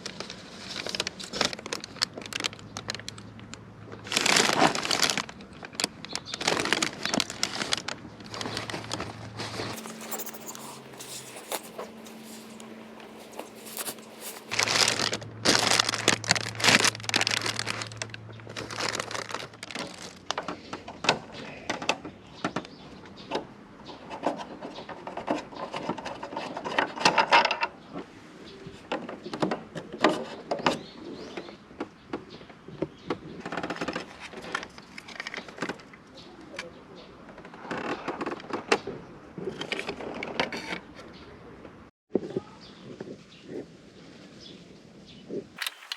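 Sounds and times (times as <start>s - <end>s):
crinkling: 0.0s - 20.8s, 45.6s - 45.9s
faint low hum: 8.0s - 19.7s.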